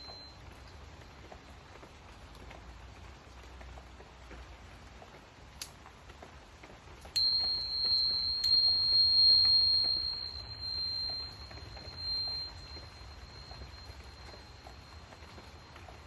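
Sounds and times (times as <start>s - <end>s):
tuning fork ringing: 0.0s - 0.6s, 7.2s - 16.0s
soft rain pattering: 0.0s - 16.0s.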